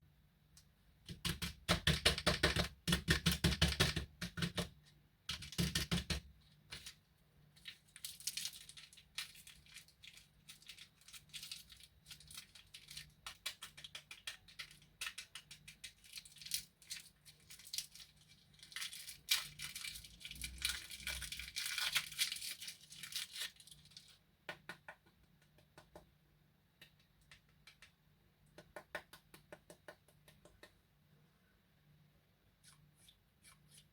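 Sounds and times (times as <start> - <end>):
candy packaging crinkling and tearing: 7.6 - 24.2.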